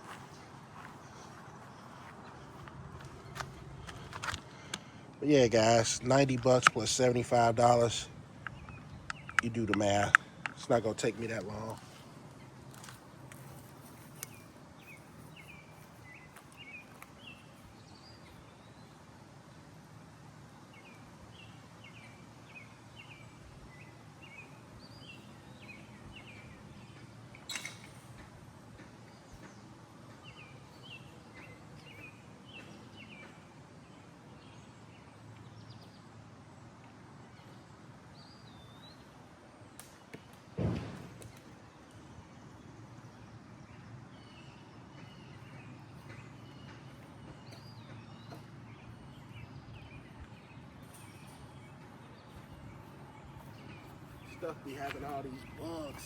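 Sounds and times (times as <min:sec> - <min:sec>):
songbirds chirping: 0:00.0 - 0:56.0
loud thump: 0:40.6 - 0:41.3
sharp knock: 0:40.6 - 0:41.3.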